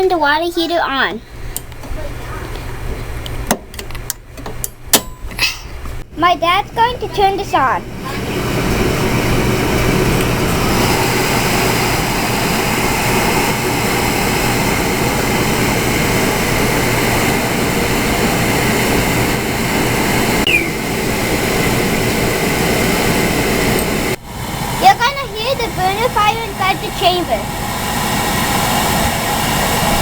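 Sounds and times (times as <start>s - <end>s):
oil burner running: 6.4s - 30.0s.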